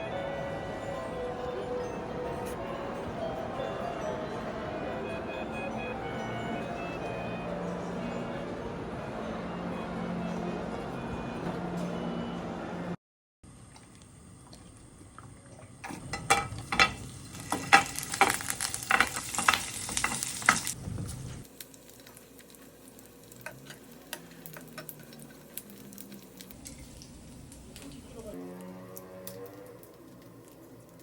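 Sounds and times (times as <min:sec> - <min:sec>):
utensil clatter while stirring: 0:15.8 - 0:20.6
food sizzling in a pan: 0:16.3 - 0:28.3.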